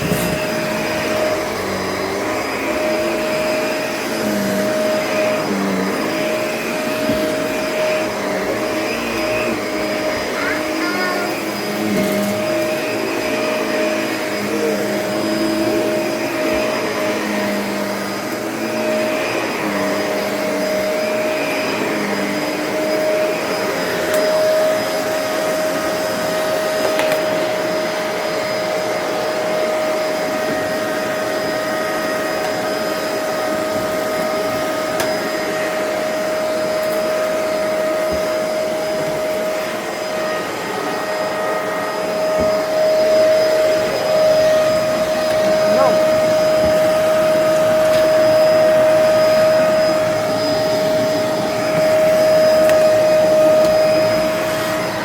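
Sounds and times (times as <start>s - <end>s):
vacuum cleaner motor whine: 0.0s - 55.0s.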